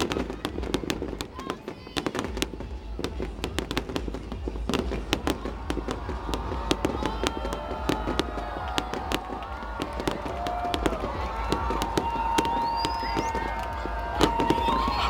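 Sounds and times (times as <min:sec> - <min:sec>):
fireworks crackling and popping: 0:00.0 - 0:15.0
faint wavering whistles: 0:11.8 - 0:15.0.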